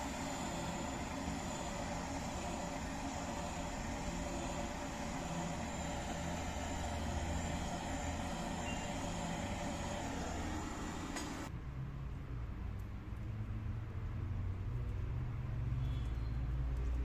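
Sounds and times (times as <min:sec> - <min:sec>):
mechanical hum with hiss: 0:00.0 - 0:12.3.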